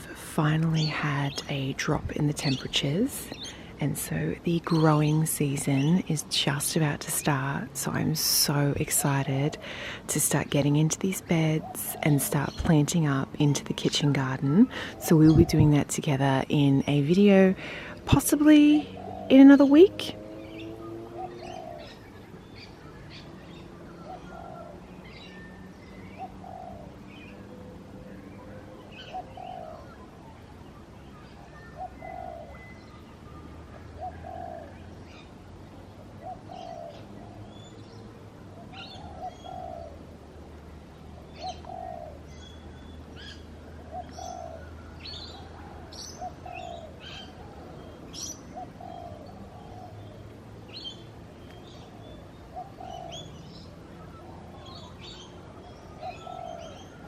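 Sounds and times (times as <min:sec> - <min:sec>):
bird cooing: 0:18.7 - 0:27.5, 0:28.3 - 0:30.4, 0:31.1 - 0:35.3, 0:36.0 - 0:37.8, 0:38.5 - 0:40.1, 0:41.2 - 0:57.0.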